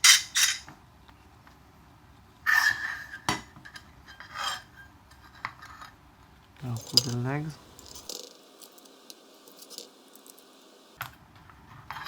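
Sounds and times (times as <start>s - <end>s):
metal parts clinking and scraping: 6.6s - 11.0s.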